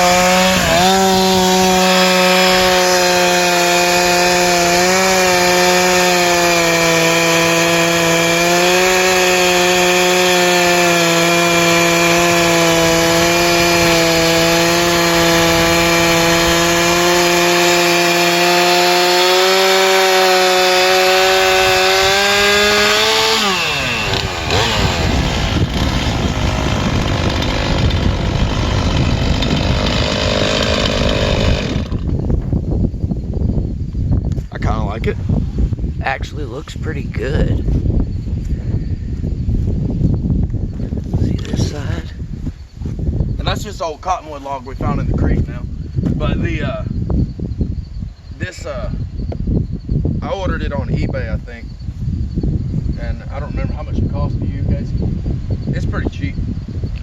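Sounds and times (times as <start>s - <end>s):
chainsaw idling roughly: 0.0s - 32.1s
chainsaw running at full throttle: 0.0s - 32.2s.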